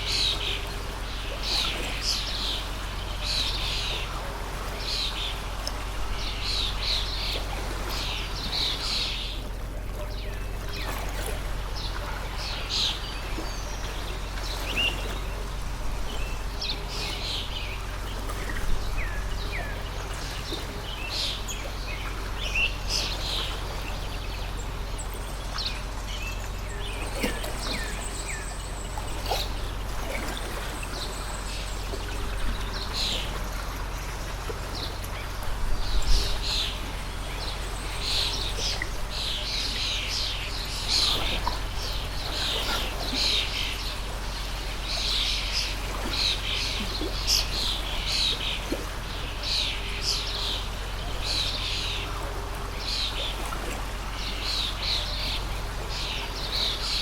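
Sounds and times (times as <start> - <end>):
small birds chirping: 0.0 - 57.0
stream flowing: 0.0 - 57.0.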